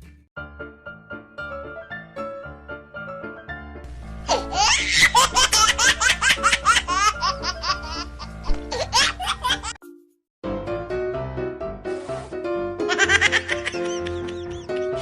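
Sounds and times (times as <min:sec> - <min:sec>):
light background music: 0:00.0 - 0:15.0
rapid high-pitched laughter: 0:13.0 - 0:15.0.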